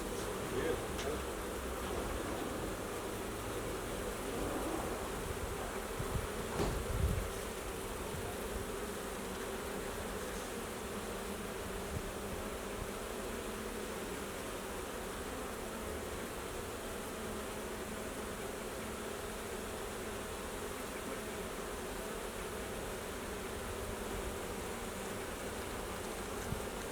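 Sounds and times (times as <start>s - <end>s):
honeybees buzzing: 0.0s - 26.9s
low thump: 6.1s - 7.2s.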